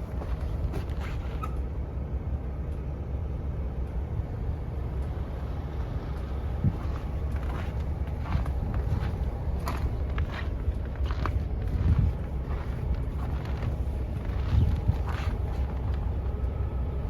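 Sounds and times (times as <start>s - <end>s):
wind buffeting microphone: 4.2s - 17.0s.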